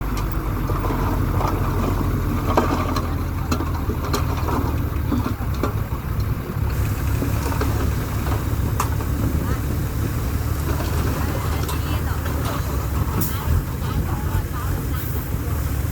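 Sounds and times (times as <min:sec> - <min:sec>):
bulldozer diesel engine rumble: 0:00.0 - 0:15.9.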